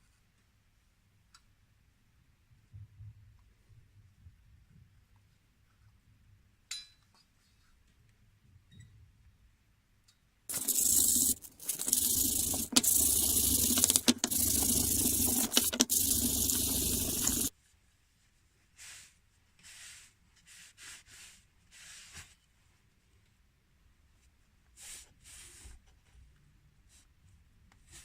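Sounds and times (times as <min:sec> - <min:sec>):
faint rubbing strokes: 0:10.5 - 0:17.5
loud steady hiss: 0:10.5 - 0:17.5.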